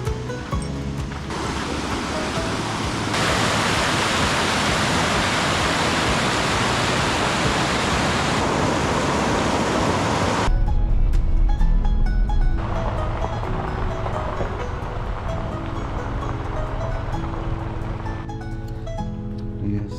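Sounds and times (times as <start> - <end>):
background music: 0.0 - 8.4, 10.4 - 19.9
rushing water: 0.0 - 10.5, 12.6 - 18.3
loud low rumble: 1.4 - 18.3.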